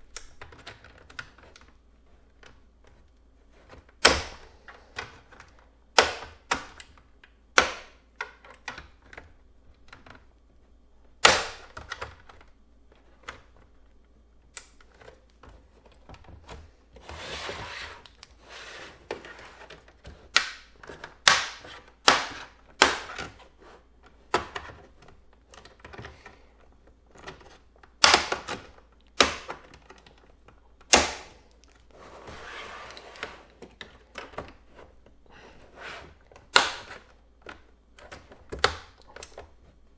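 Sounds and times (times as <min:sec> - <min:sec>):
plastic scraping: 0:14.8 - 0:28.0.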